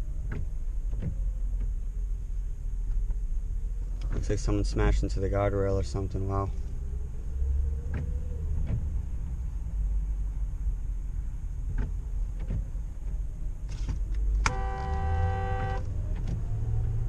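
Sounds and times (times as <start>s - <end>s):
road and engine rumble: 0.0s - 17.0s
car horn two-note blast: 14.4s - 15.9s.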